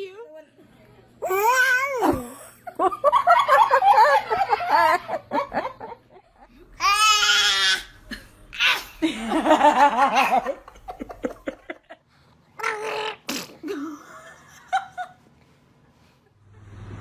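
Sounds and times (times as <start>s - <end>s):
pulsing laughter: 8.0s - 12.0s
baby sneezing: 12.6s - 13.7s.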